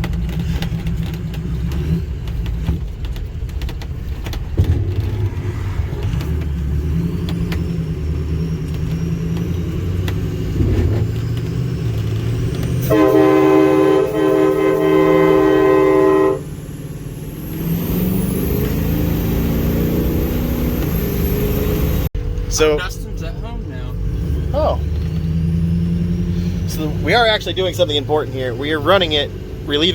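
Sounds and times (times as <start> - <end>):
truck engine running: 0.0 - 29.9
air train horn blast: 12.8 - 16.6.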